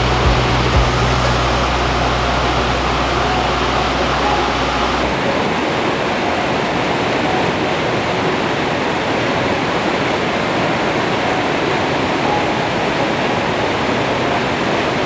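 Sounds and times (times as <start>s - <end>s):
low hum: 0.0s - 5.5s
waterfall rushing: 0.0s - 15.0s.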